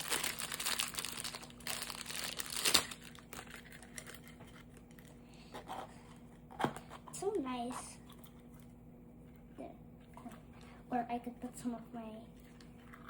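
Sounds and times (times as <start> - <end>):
plastic packaging crinkling: 0.0 - 5.2.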